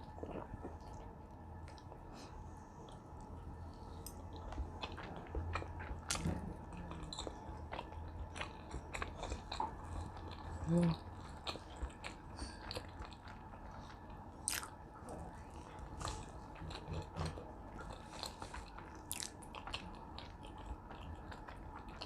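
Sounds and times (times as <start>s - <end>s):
chewing and crunching: 0.0s - 22.0s
low steady hum: 0.0s - 22.0s.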